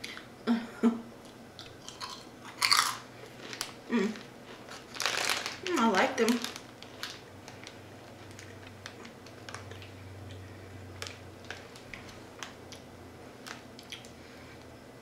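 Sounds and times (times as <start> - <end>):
faint low hum: 0.0 - 15.0
person chewing crunchy snacks: 1.2 - 5.7, 6.4 - 10.4, 13.5 - 14.1.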